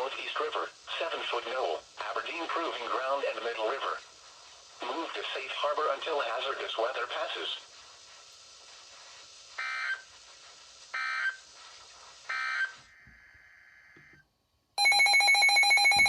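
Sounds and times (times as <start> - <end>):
electronic data screeches: 14.8 - 16.0
loud alert attention tone: 14.8 - 16.0.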